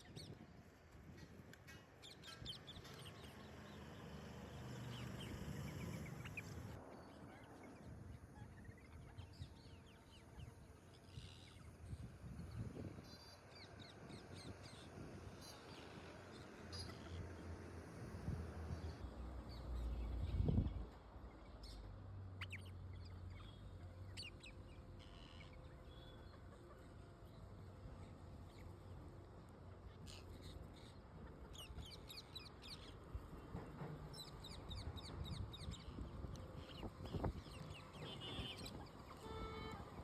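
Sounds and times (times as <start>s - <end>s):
birds chirping: 2.0s - 11.8s, 34.1s - 40.0s.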